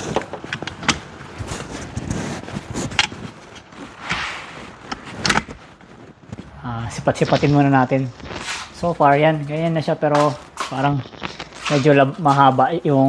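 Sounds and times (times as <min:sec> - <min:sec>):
awning brackets clicking and knocking: 0:00.0 - 0:02.1.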